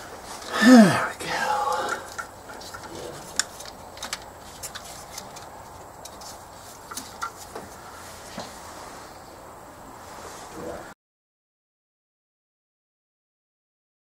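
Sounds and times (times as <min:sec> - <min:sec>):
faint room noise: 0:00.0 - 0:11.0.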